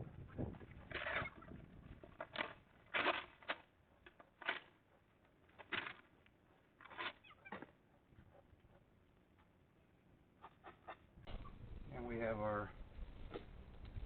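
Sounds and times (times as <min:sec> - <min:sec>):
rake scraping dry leaves: 0:02.2 - 0:04.7.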